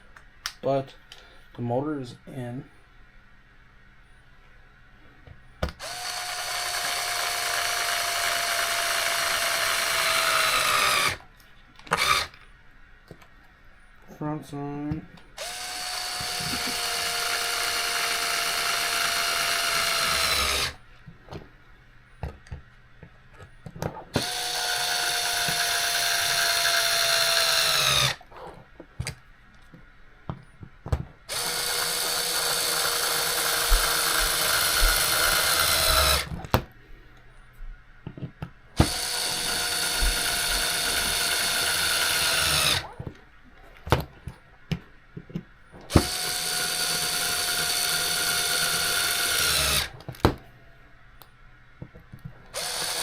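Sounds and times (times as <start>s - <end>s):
electric screwdriver whining: 5.8s - 11.2s, 11.9s - 12.4s, 15.4s - 20.8s, 24.1s - 28.2s, 31.3s - 36.4s, 38.8s - 42.9s, 45.9s - 50.0s, 52.5s - 53.0s.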